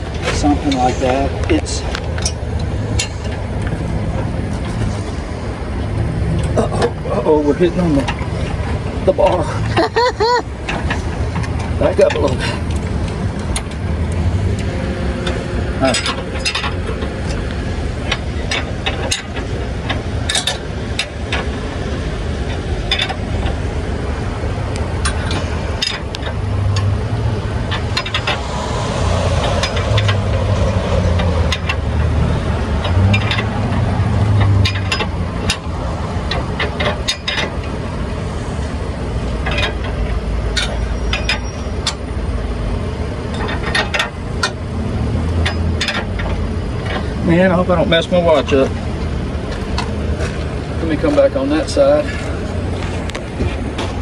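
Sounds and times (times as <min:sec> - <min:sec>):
vehicle engine idling: 0:00.0 - 0:54.0
sharp clicks and knocks: 0:10.6 - 0:21.6, 0:22.4 - 0:23.6, 0:24.7 - 0:37.8, 0:39.4 - 0:42.1, 0:43.3 - 0:44.6, 0:45.2 - 0:47.1.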